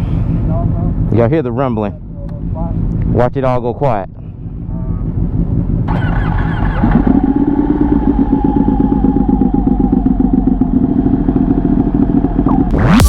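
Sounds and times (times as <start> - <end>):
motorcycle engine revving: 4.3 - 13.0.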